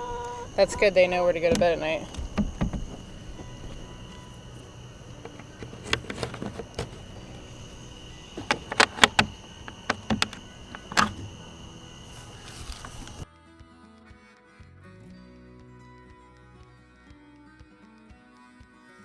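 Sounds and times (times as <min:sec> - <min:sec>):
high insect drone: 0:00.0 - 0:13.2
sharp knocks and taps: 0:01.5 - 0:13.2.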